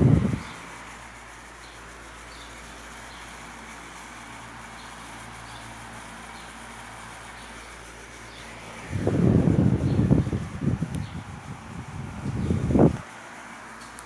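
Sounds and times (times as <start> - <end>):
electric fan humming: 0.0 - 14.0.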